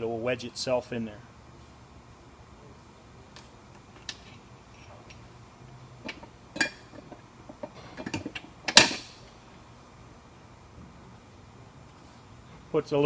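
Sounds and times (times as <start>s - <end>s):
metal fittings clinking: 6.0s - 9.2s.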